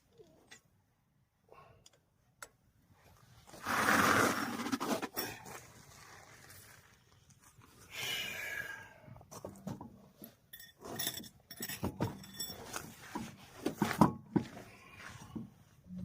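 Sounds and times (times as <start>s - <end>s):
metal tools clinking and knocking: 10.5s - 13.3s.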